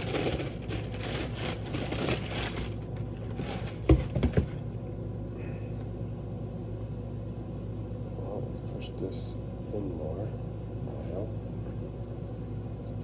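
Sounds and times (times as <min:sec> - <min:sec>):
paper rustling: 0:00.0 - 0:04.5
steady low hum: 0:00.0 - 0:13.0
dull thumps: 0:03.7 - 0:04.6.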